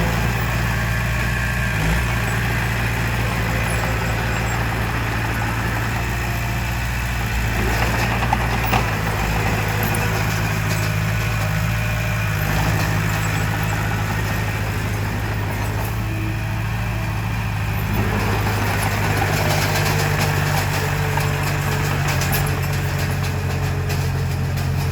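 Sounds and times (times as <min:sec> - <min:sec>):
bulldozer diesel engine running: 0:00.0 - 0:24.9.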